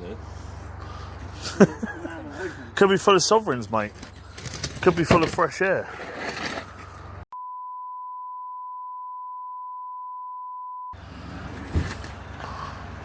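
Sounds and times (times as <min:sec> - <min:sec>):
steady beep tone: 0:07.3 - 0:11.0.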